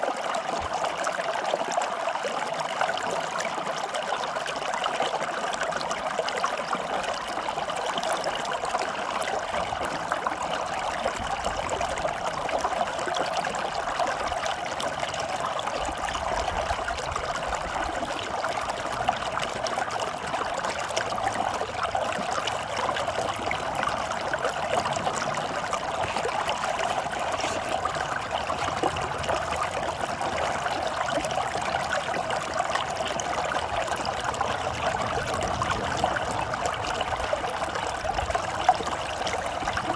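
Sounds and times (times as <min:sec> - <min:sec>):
running water flowing: 0:00.0 - 0:39.9.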